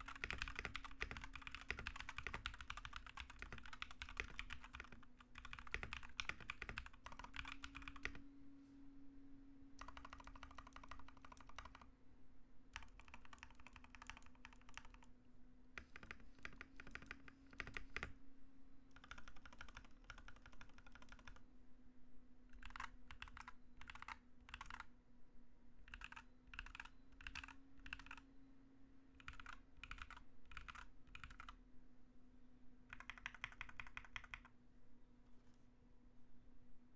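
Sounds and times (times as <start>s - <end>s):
mechanical keyboard typing: 0.0s - 8.2s, 9.8s - 11.9s, 12.7s - 15.1s, 15.8s - 18.2s, 19.0s - 21.4s, 22.6s - 24.9s, 25.9s - 28.2s, 29.2s - 31.6s, 32.9s - 34.5s.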